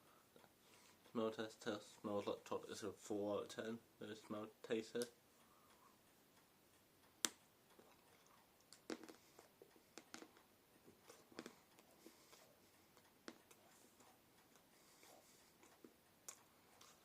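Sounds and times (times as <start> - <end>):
soft chewing clicks: 7.7 - 17.0.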